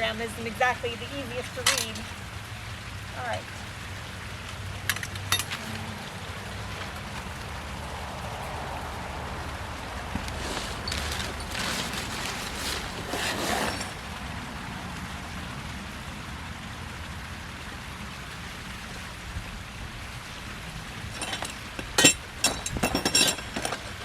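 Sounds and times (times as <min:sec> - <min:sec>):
outdoor background noise: 0:00.0 - 0:24.0
metal parts clinking: 0:01.5 - 0:02.1, 0:04.8 - 0:05.6, 0:10.4 - 0:14.0, 0:21.1 - 0:24.0
soft rustling: 0:10.0 - 0:14.0.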